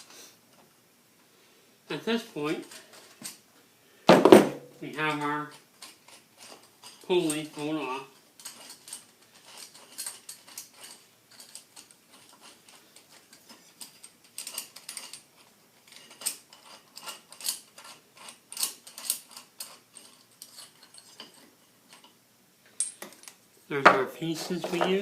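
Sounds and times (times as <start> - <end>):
metal tools clicking and clinking: 5.0 - 23.4.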